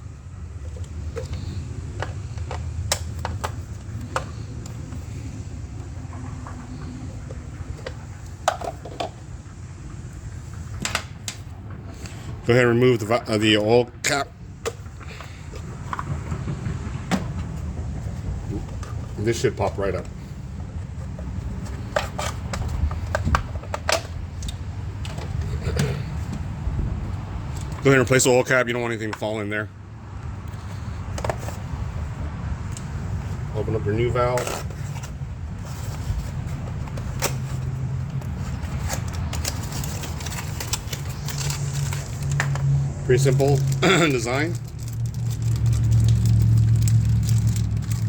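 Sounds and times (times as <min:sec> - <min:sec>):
plastic parts clicking and popping: 0:00.7 - 0:04.8, 0:35.8 - 0:48.0
steady low drone: 0:38.0 - 0:48.0.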